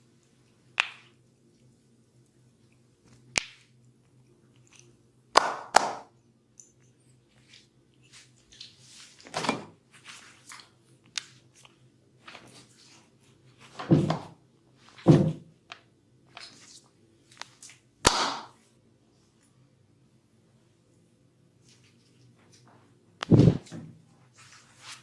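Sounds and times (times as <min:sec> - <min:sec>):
loud slaps on skin: 0:05.4 - 0:06.1, 0:18.0 - 0:18.6.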